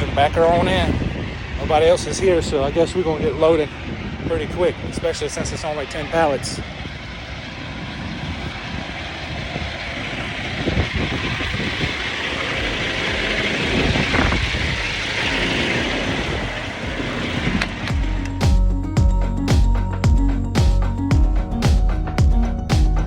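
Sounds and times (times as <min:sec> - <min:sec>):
truck diesel engine running: 0:08.9 - 0:23.0.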